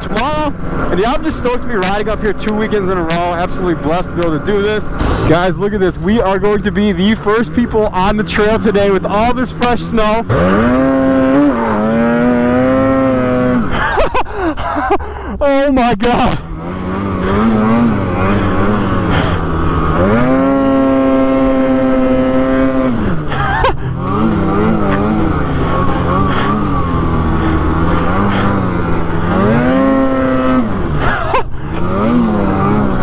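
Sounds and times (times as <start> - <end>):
snowmobile engine revving: 0.0 - 33.0.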